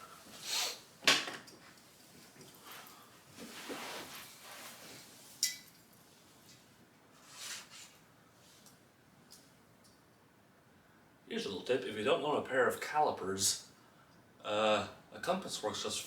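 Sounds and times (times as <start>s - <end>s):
soft rustling and shuffling: 1.4s - 9.6s
metal tools clinking: 5.4s - 5.9s.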